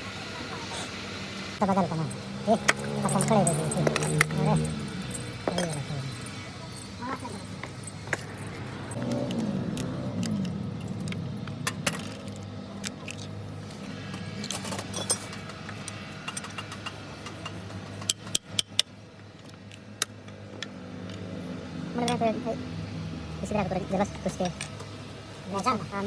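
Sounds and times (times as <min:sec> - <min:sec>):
engine humming: 0:00.0 - 0:26.0
metal tools clinking: 0:01.6 - 0:22.4.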